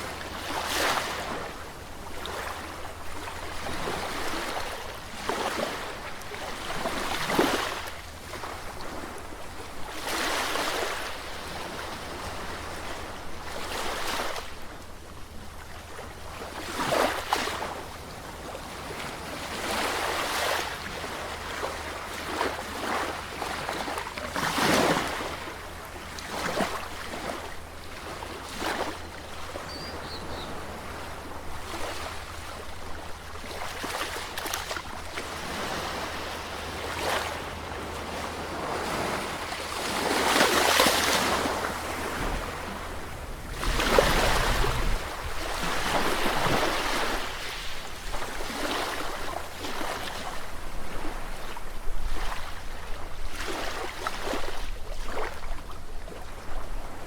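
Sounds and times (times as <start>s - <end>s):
sea waves breaking on shore: 0.0s - 57.0s.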